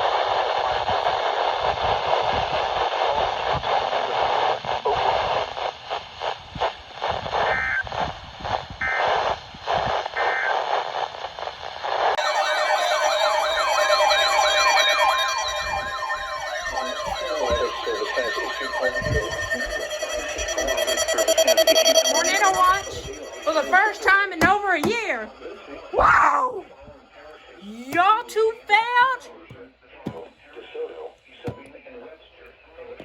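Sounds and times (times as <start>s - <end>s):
wailing sirens: 12.2s - 24.0s
alert data tones: 12.2s - 24.6s
radio static: 12.2s - 24.7s.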